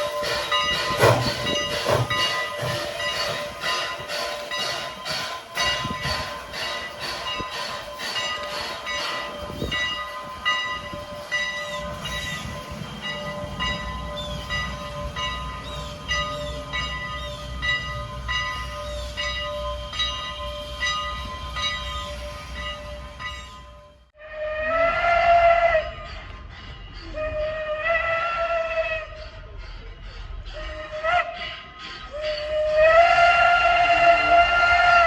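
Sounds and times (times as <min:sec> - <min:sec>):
steam locomotive chugging: 0:00.0 - 0:35.0
steam whistle blowing: 0:18.6 - 0:26.3, 0:27.0 - 0:29.5, 0:30.5 - 0:35.0.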